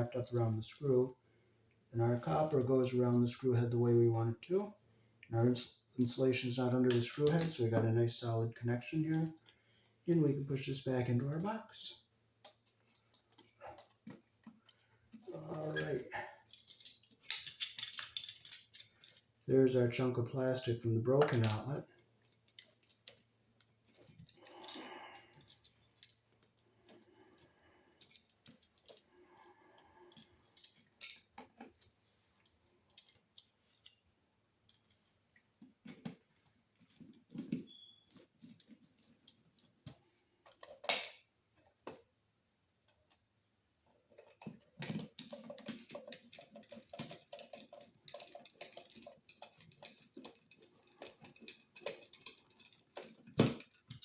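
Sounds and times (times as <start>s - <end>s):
rapid clicking and scraping: 44.0s - 54.0s.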